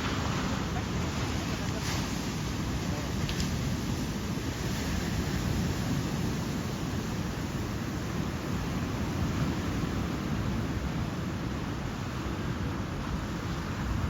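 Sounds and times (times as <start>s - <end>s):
ocean surf rushing: 0.0s - 14.0s
wind noise on microphone: 0.0s - 14.0s.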